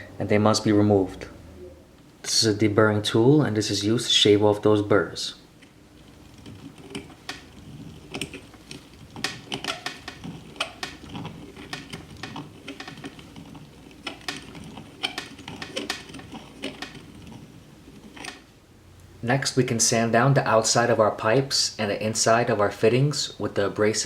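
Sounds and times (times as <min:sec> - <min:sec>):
deburring tool scraping copper pipe: 0:06.1 - 0:18.4.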